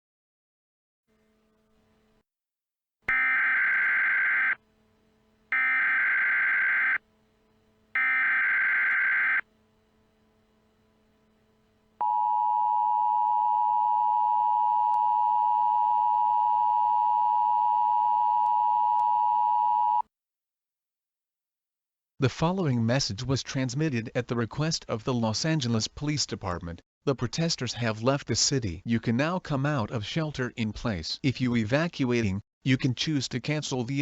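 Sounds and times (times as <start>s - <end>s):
digital data tone bursts: 3.1s - 4.6s, 5.6s - 7.0s, 8.0s - 9.4s
two-tone alert signal: 5.6s - 7.0s.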